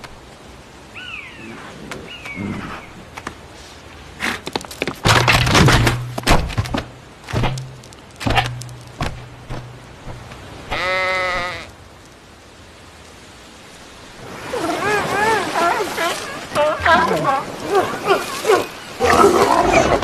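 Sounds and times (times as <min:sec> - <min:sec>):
knocks and thumps: 0:04.5 - 0:10.4
wavering bleat: 0:10.7 - 0:11.7.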